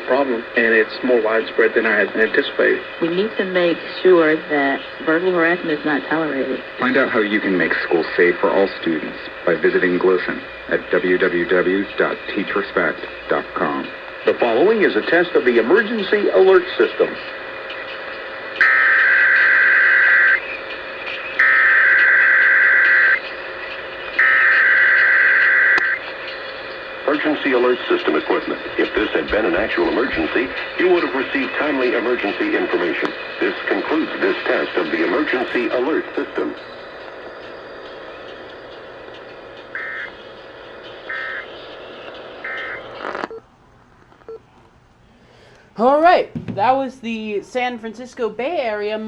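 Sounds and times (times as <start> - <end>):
steady hum and radio noise: 0.0 - 49.0
buzzy two-tone data bursts: 18.6 - 20.5, 21.4 - 23.2, 24.2 - 26.0, 27.2 - 43.4
buzzing digital data bursts: 39.7 - 43.4.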